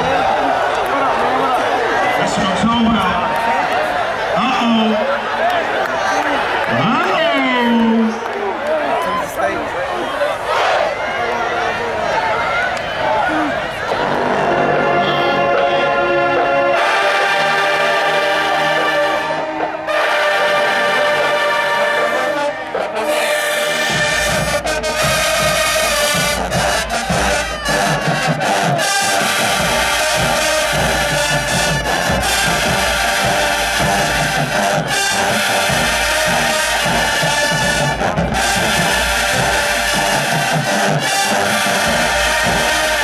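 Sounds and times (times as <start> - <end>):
marching band brass playing: 0.0 - 8.2, 13.5 - 43.0
heavy low drums: 23.2 - 43.0.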